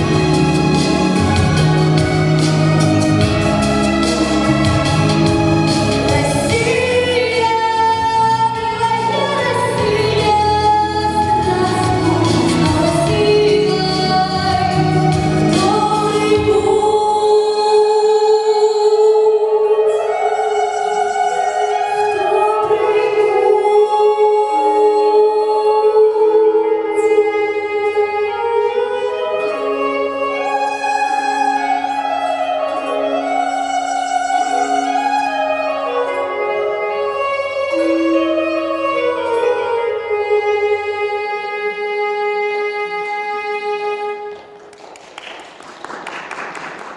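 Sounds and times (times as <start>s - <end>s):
instrumental accompaniment: 0.0s - 46.9s
woman singing long notes: 6.0s - 29.8s.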